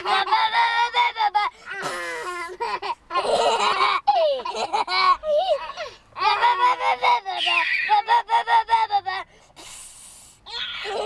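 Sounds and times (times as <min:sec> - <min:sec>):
children laughing: 0:00.0 - 0:01.5, 0:02.5 - 0:09.2.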